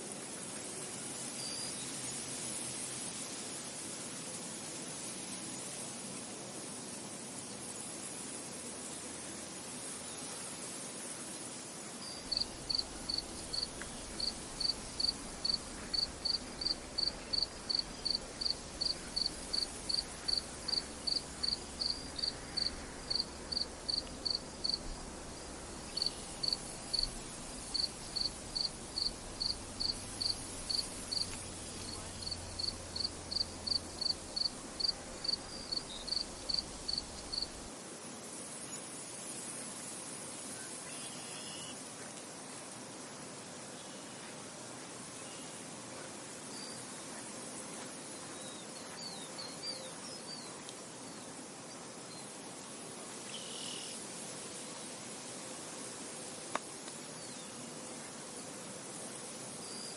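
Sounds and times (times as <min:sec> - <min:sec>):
wind hiss: 0:00.0 - 0:48.7
cricket chirping: 0:07.4 - 0:37.7, 0:38.3 - 0:42.0, 0:46.5 - 0:59.9.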